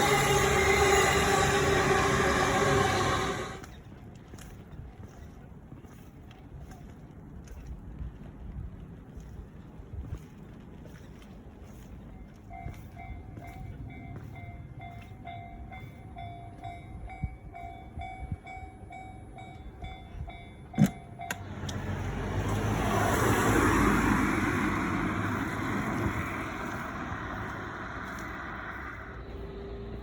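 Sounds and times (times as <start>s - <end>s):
level-crossing alarm ringing: 0.0s - 3.6s
vehicle passing: 0.0s - 3.6s, 21.4s - 30.0s.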